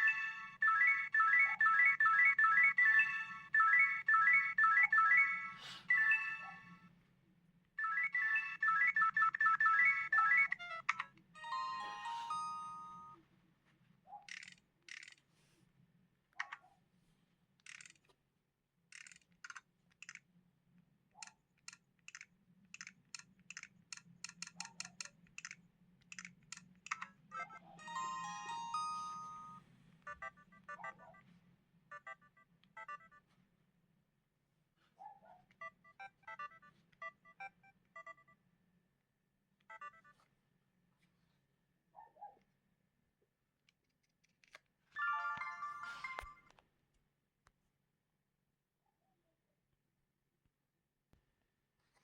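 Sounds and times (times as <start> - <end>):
phone melodic ringtone: 0.0 - 6.8, 7.8 - 13.2, 27.8 - 30.3, 45.0 - 46.5
phone alert tone: 11.4 - 13.2, 27.8 - 31.0, 45.0 - 46.5.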